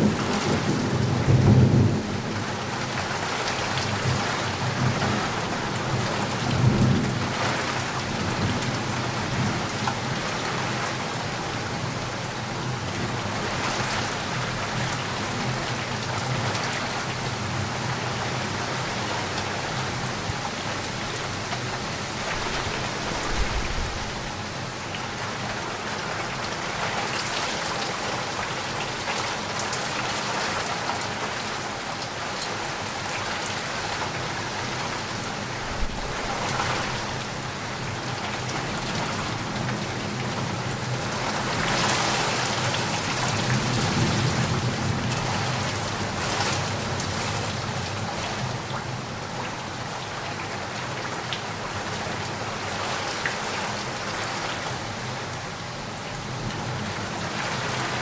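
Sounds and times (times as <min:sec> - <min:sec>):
steady rain falling: 0:00.0 - 0:58.0
low roll of thunder: 0:22.2 - 0:24.6, 0:35.6 - 0:37.2.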